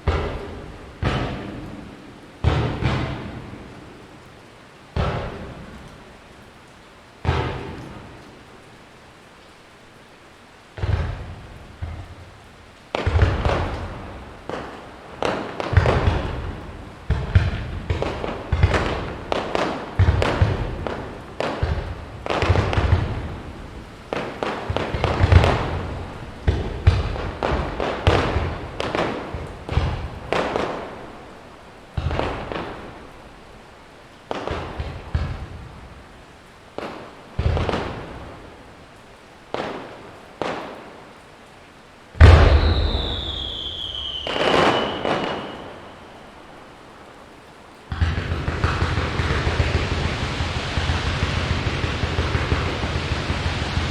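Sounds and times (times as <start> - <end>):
firework shells bursting: 42.2 - 46.3, 47.9 - 53.9.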